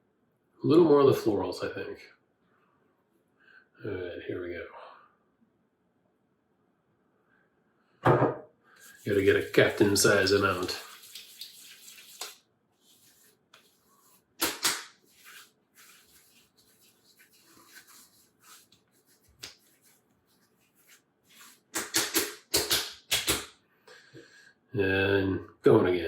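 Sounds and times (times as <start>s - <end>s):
hands slapping face: 14.4s - 15.0s, 19.4s - 19.6s, 21.7s - 23.5s.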